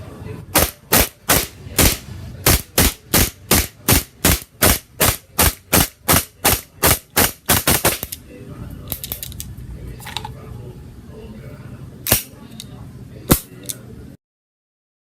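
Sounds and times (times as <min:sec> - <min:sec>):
airsoft pistol shots: 0:00.6 - 0:08.1.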